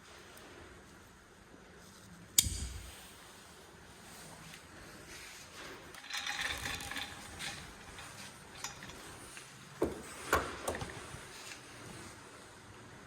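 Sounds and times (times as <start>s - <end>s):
wire rustling: 4.2s - 12.2s.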